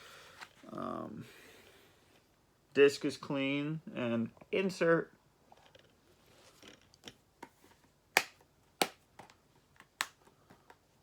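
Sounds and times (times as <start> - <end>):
plastic case clicks and snaps: 8.2 - 10.8.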